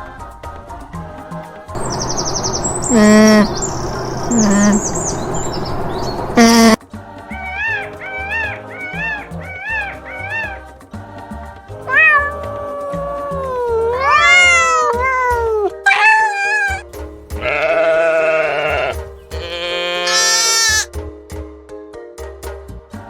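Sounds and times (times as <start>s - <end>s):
background music: 0.0s - 15.9s, 20.8s - 23.0s
cat meowing: 7.6s - 10.6s, 11.9s - 16.8s, 17.4s - 18.9s, 19.5s - 20.9s.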